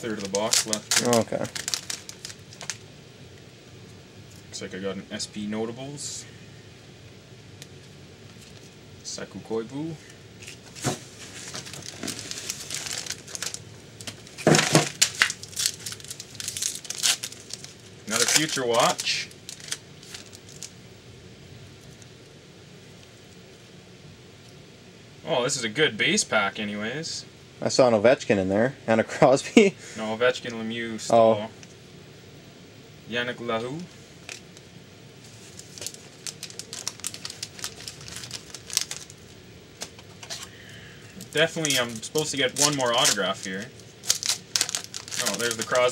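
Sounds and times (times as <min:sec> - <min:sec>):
plastic wrapper crinkling: 0:00.0 - 0:02.9, 0:10.4 - 0:20.8, 0:35.2 - 0:40.5, 0:41.1 - 0:45.9.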